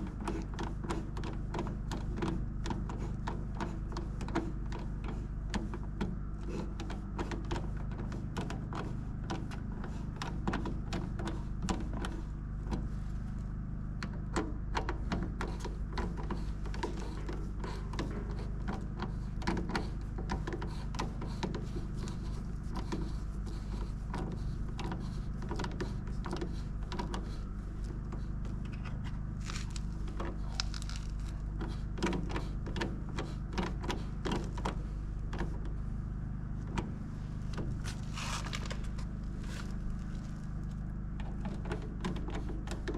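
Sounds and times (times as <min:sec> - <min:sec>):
steady low hum: 0:00.0 - 0:42.9
small clicks and knocks: 0:14.0 - 0:35.8, 0:37.5 - 0:42.9.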